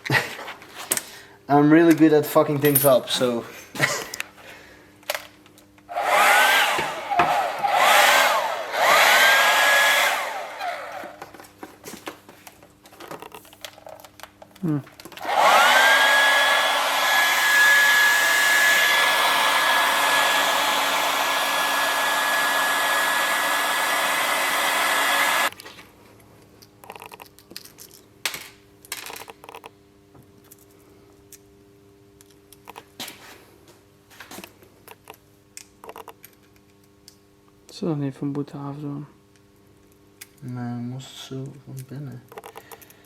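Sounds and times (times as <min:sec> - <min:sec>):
heat gun fan blowing: 0:05.9 - 0:11.3, 0:15.1 - 0:25.6.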